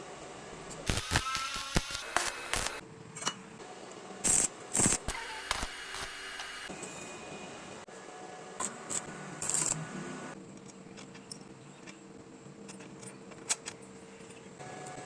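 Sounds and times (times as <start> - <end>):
small metal parts clinking: 8.6 - 9.8.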